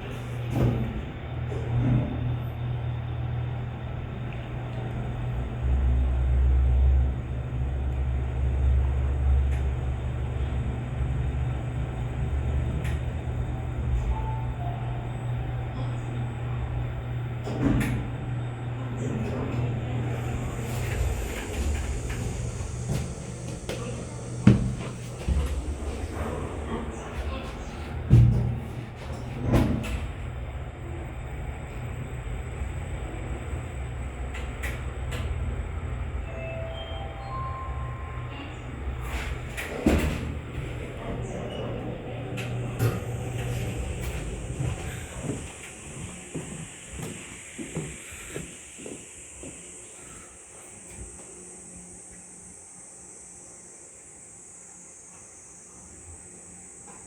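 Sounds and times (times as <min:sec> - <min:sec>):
elevator hum and rumble: 0:00.0 - 0:57.0
elevator knock: 0:21.0 - 0:30.2.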